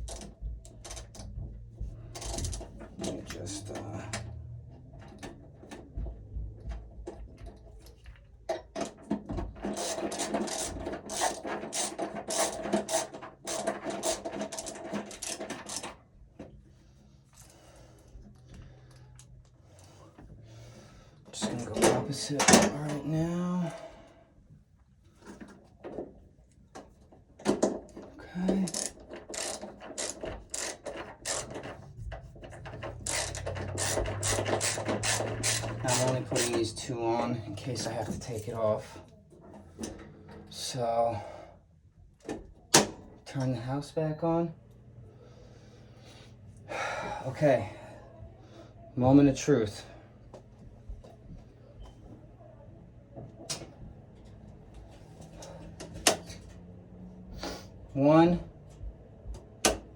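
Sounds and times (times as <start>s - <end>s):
rapid screw clicking and rattling: 9.0s - 16.0s, 28.7s - 36.6s.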